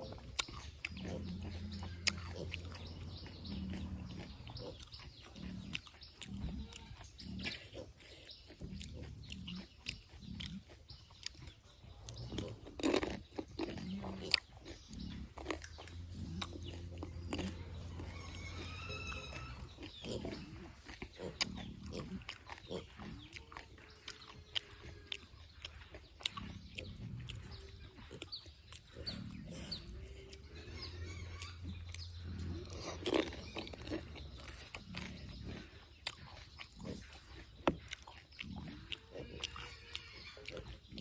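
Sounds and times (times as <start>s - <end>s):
wet chewing: 0.0s - 41.0s
mouth clicks: 0.1s - 30.5s.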